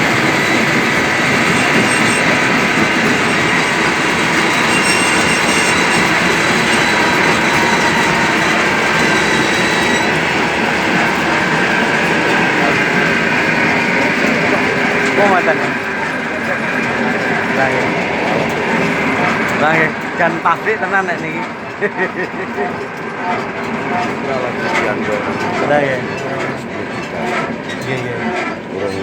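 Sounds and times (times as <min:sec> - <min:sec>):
faint high whine: 0:00.0 - 0:22.1
stone crusher machinery din: 0:00.0 - 0:28.7.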